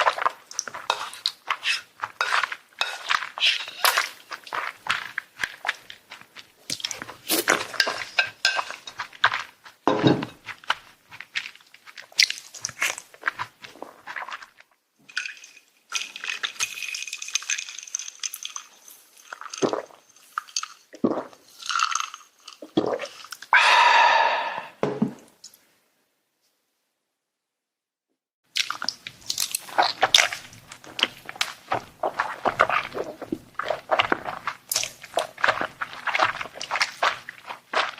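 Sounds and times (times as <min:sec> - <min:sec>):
chewing and crunching food: 0:00.0 - 0:23.6, 0:28.5 - 0:37.9
utensils clinking on dishes: 0:07.6 - 0:09.1.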